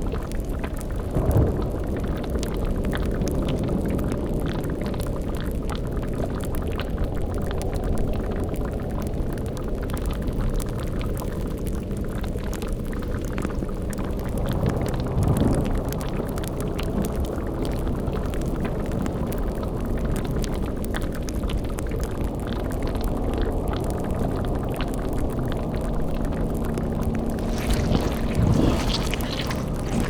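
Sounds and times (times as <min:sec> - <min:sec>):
bubbling cauldron: 0:26.2 - 0:30.0
fire crackling: 0:27.2 - 0:30.0.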